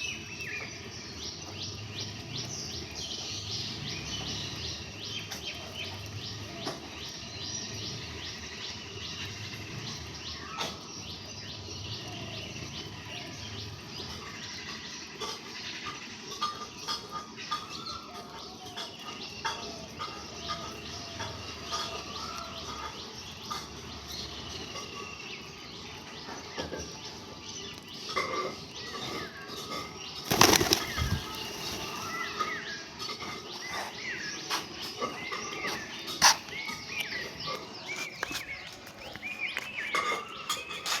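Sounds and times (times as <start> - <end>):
small birds chirping: 0.0 - 41.0
wing flapping: 30.3 - 32.3.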